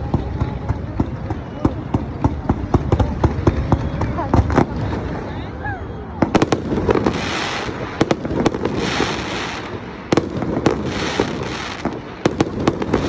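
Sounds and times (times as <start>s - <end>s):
fireworks bangs: 0.0s - 13.0s
hissing crackling sparkle: 6.3s - 13.0s.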